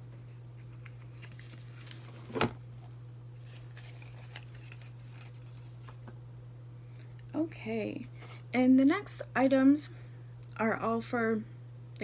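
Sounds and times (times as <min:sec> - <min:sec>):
faint rustles and clicks: 0:00.6 - 0:06.1.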